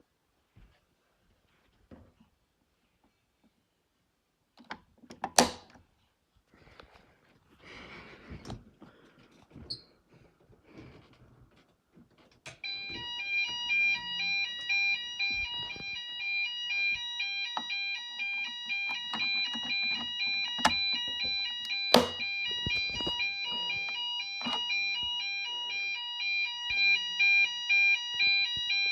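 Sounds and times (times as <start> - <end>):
two-tone fire alarm: 12.5 - 28.9.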